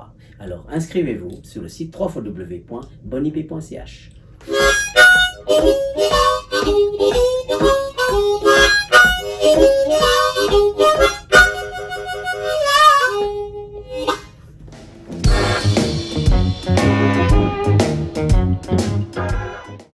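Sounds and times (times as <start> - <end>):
harmonica playing blues: 4.4 - 14.5, 15.2 - 19.9.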